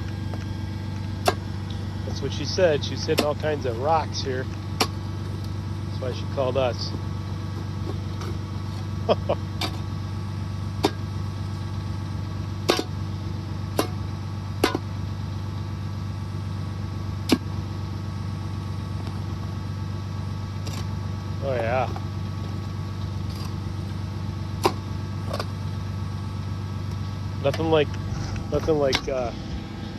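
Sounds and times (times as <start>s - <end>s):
tractor engine running: 0.0s - 29.9s
auger bit knocking on rocks: 2.4s - 8.9s, 10.8s - 11.1s, 24.6s - 25.6s.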